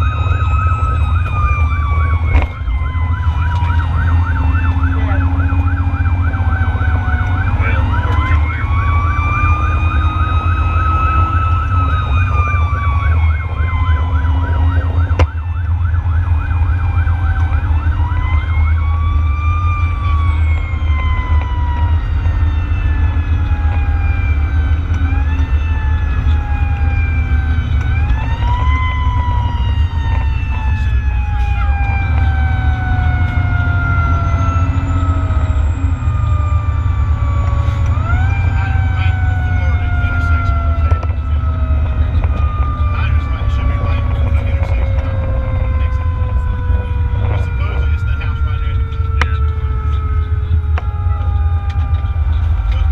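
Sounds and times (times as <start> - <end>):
fast warbling siren: 0.0 - 52.9
fire engine siren wailing: 0.0 - 52.9
low engine drone: 0.0 - 52.9.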